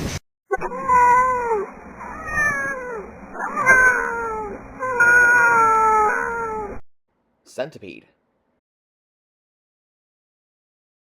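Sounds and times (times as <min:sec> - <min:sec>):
cat meowing: 0:00.5 - 0:06.8.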